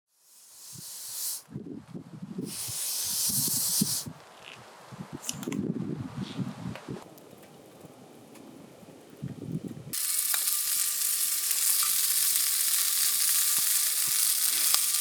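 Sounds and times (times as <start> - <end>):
spray-like hiss: 0.1 - 1.5, 2.4 - 4.1, 10.0 - 15.0.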